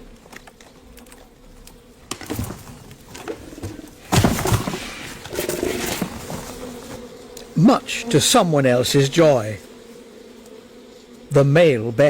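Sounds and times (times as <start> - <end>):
rustling and knocking: 0.0 - 7.2
bees buzzing: 0.0 - 12.0.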